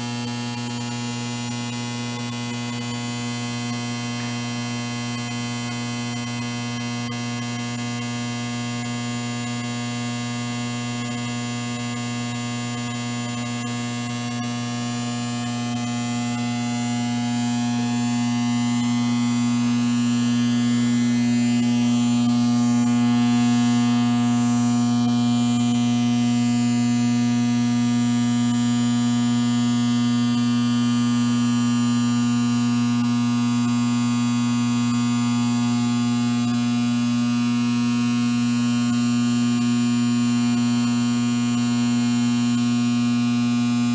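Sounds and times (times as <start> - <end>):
electrical hum: 18.5 - 29.2.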